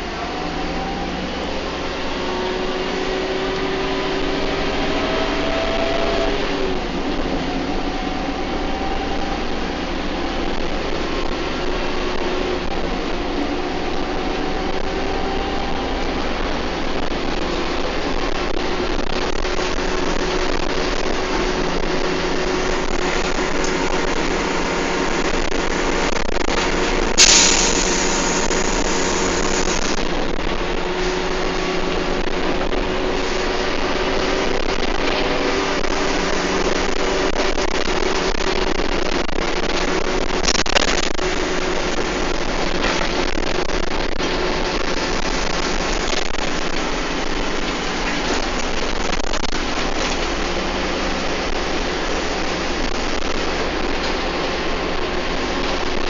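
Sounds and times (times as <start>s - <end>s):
bus engine running: 0.0s - 56.0s
air hiss: 27.2s - 30.0s.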